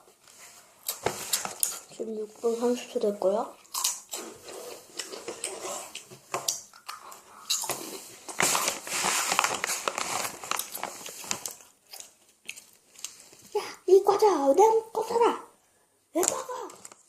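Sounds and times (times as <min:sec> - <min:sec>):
crunchy snacks being chewed: 0:03.6 - 0:13.2
plastic snack bag crinkling: 0:07.2 - 0:13.5.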